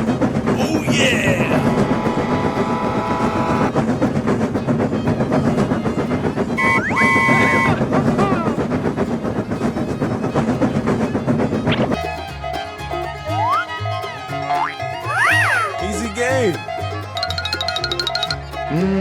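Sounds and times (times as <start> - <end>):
train wheels rumbling on rails: 0.0 - 12.0
train horn: 1.8 - 3.7, 6.6 - 7.8
short rising whistle: 6.6 - 7.8.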